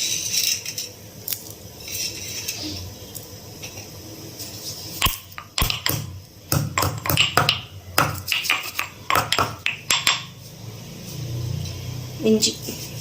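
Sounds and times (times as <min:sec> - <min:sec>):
pestle pounding spices in mortar: 0:05.0 - 0:10.4.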